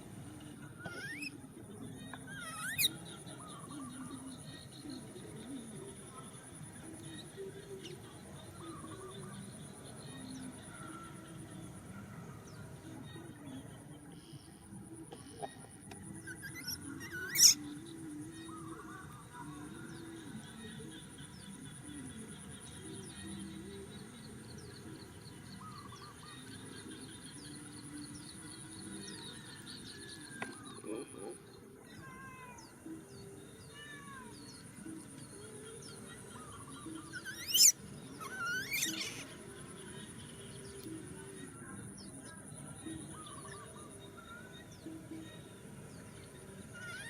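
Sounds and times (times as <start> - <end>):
high insect hum: 13.0 - 47.0
bird chirps: 35.9 - 40.2.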